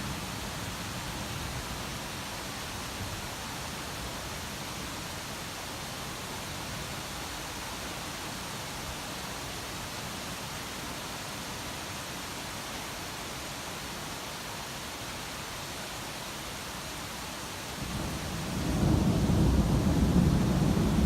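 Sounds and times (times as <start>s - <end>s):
steady storm hiss: 15.4s - 21.0s.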